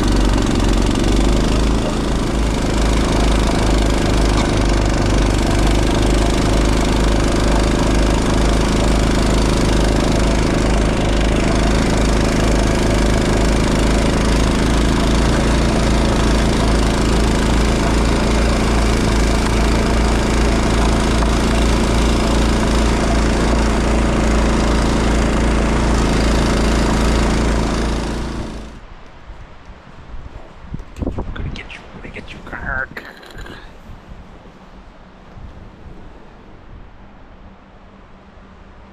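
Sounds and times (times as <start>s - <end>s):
snowblower engine running: 0.0s - 29.0s.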